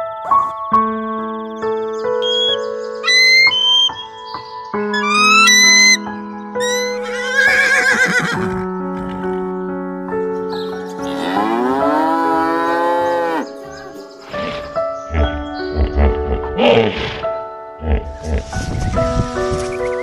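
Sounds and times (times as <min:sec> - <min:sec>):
background music: 0:00.0 - 0:20.0
cow mooing: 0:11.0 - 0:13.5.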